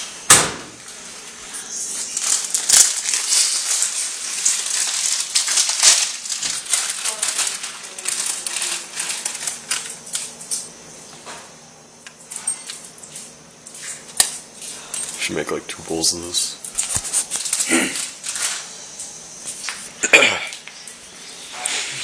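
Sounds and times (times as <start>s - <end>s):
packaging crinkling: 0.9s - 10.7s, 16.2s - 19.9s.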